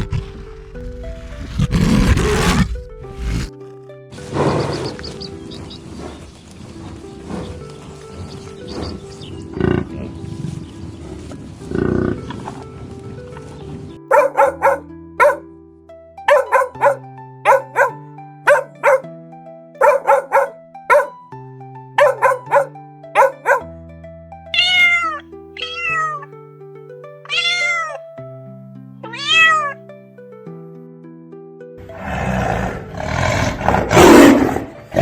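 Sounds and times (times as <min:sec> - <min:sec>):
background music with held notes: 0:00.0 - 0:35.0
cat meowing: 0:24.6 - 0:26.3, 0:27.3 - 0:28.0, 0:29.0 - 0:29.8.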